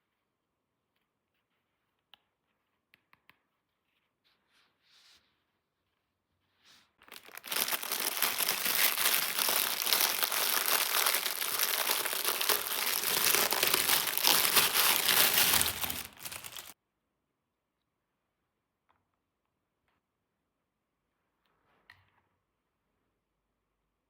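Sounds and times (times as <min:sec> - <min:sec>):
toy packaging crinkling: 0:07.1 - 0:16.8.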